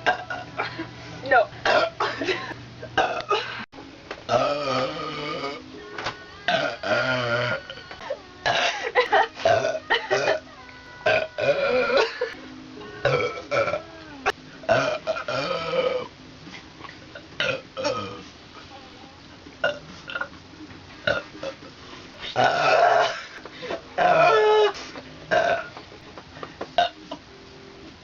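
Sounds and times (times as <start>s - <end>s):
person belching loudly: 0.0s - 0.5s, 4.3s - 5.6s, 6.5s - 8.8s, 9.4s - 12.4s, 13.0s - 16.1s, 17.4s - 18.2s, 22.4s - 23.4s, 24.0s - 24.6s, 25.3s - 25.7s.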